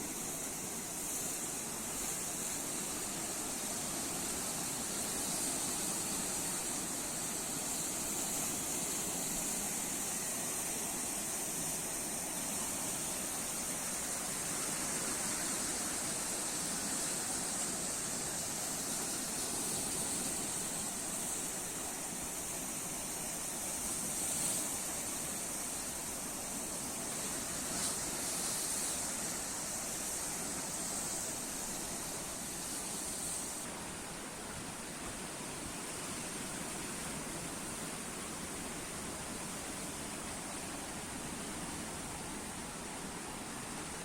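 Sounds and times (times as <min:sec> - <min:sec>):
high hiss: 0:00.0 - 0:44.0
sea waves washing on shore: 0:00.0 - 0:44.0.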